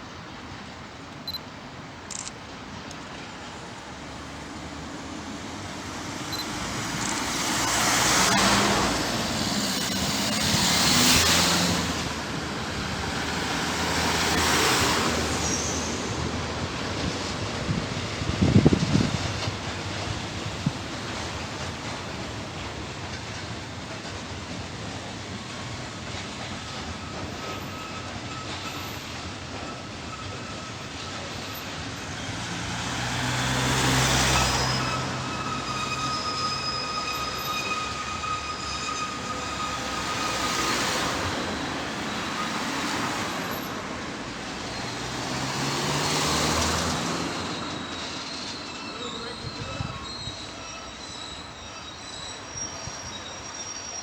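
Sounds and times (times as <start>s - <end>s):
train rail rumble: 0.0s - 54.0s
thin high whining tones: 34.3s - 43.7s, 47.2s - 54.0s.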